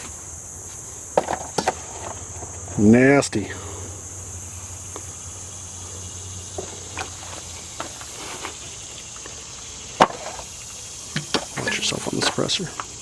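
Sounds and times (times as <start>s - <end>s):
insects droning: 0.0s - 13.0s.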